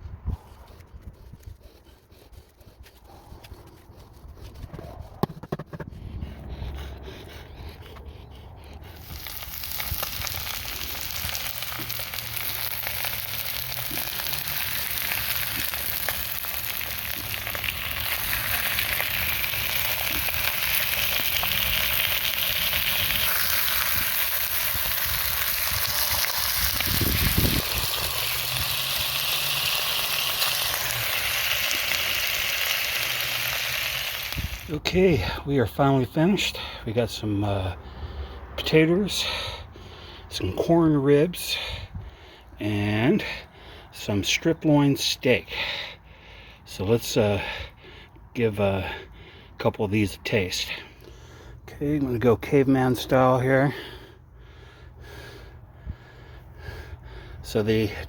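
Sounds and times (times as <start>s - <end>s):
food sizzling in a pan: 9.2s - 34.7s.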